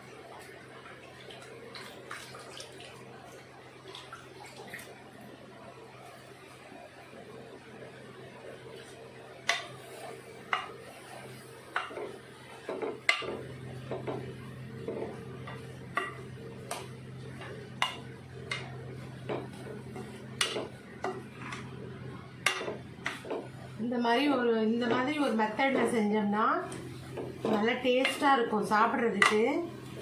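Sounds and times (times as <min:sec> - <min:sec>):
greens sauteing in a pan: 0:08.2 - 0:25.6.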